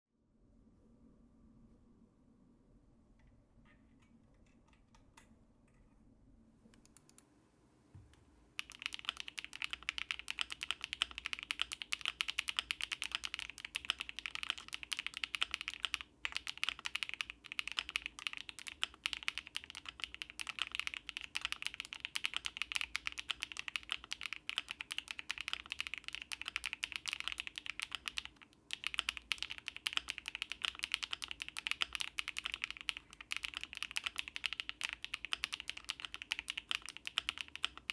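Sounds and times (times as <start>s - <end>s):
fast typing on mechanical keyboard: 8.6s - 37.9s.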